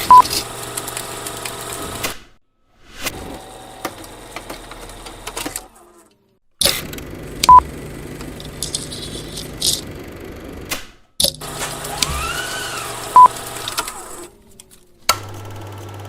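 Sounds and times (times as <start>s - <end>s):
film projector clattering: 0.0s - 2.1s, 6.6s - 10.1s, 10.7s - 14.3s.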